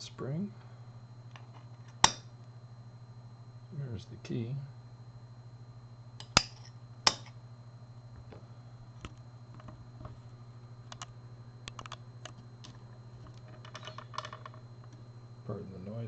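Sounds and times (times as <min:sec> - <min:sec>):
metal lock parts clicking: 0:13.4 - 0:14.6.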